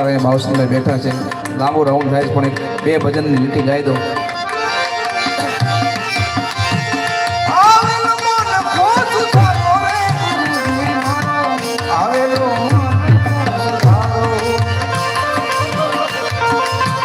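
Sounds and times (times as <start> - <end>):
held melodic notes: 0.0 - 17.0
tabla playing a rhythm: 0.0 - 17.0
person singing: 7.5 - 17.0.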